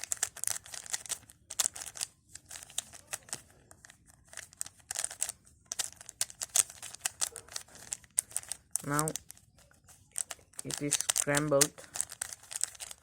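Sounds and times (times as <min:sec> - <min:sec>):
puzzle cube clicking as twisted: 0:00.0 - 0:13.0.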